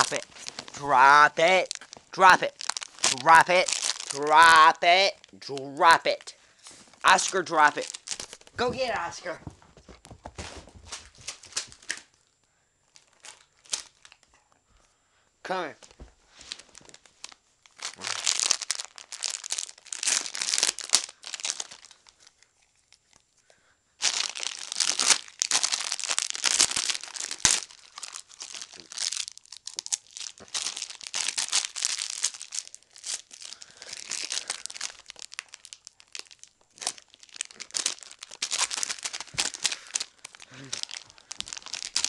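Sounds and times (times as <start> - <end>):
plastic crinkling: 0.0 - 12.3, 12.9 - 14.4, 15.8 - 23.4, 24.0 - 42.0
dog chewing plastic bag: 1.4 - 4.2, 7.8 - 11.9, 16.5 - 22.8, 24.0 - 42.0.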